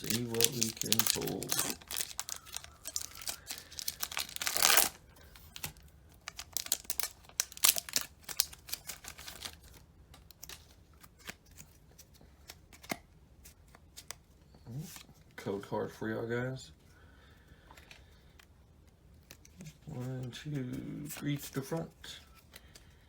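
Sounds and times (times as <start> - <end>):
foil wrapper ripping: 0.0 - 5.0, 5.6 - 9.8
wrapper crinkling: 0.0 - 10.6.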